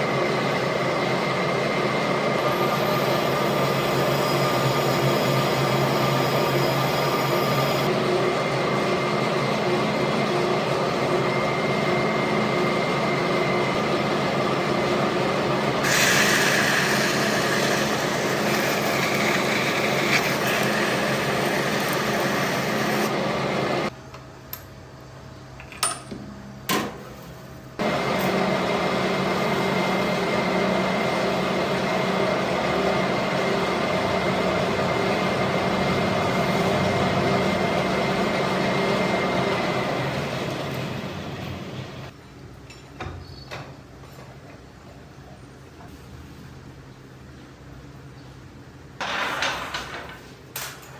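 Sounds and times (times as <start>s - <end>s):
lathe humming: 0.2s - 23.9s, 27.8s - 42.1s.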